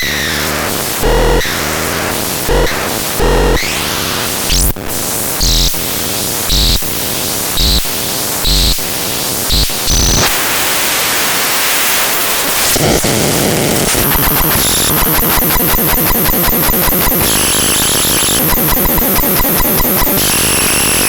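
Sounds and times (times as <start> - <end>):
static hiss: 9.2 - 21.0
electronic thumping pulses: 13.8 - 21.0.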